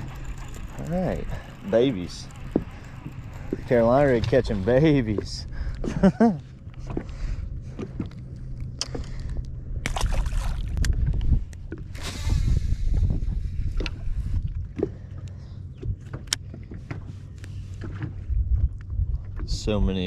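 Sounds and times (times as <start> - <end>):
gear clicks and knocks: 0.0 - 5.9
boat engine rumble: 0.0 - 20.0.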